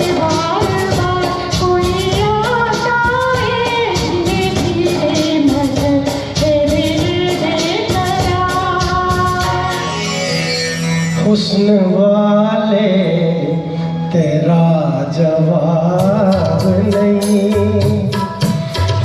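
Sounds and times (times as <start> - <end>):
percussion beat: 0.0 - 9.9, 16.0 - 19.0
band accompaniment: 0.0 - 19.0.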